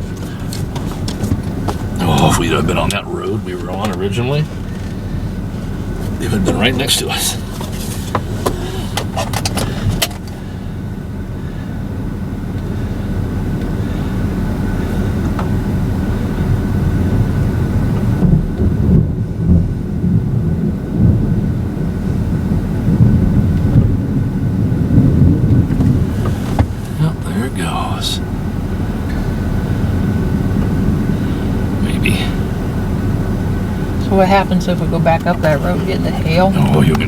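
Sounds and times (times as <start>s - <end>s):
vehicle engine rumble: 0.0s - 37.0s.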